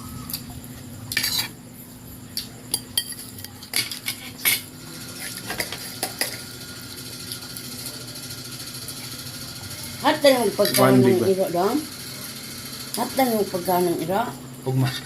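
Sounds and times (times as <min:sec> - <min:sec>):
cutlery clinking on plates: 0:02.7 - 0:06.4.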